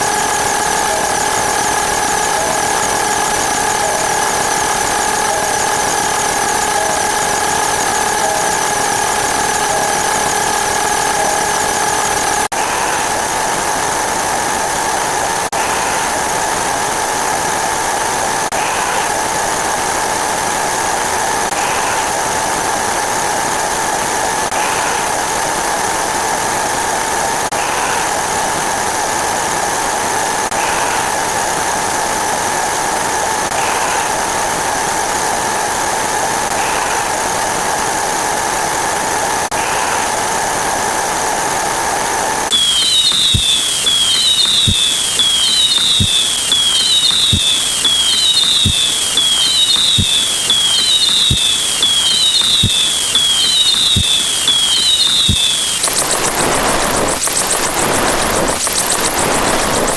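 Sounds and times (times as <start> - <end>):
held high tones: 0.0 - 14.5, 42.5 - 59.9.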